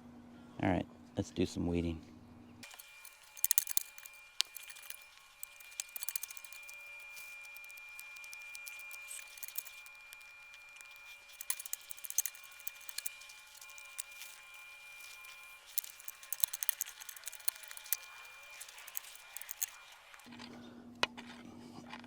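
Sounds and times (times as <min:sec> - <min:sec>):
rustling and crackling of plants: 0:02.6 - 0:19.8.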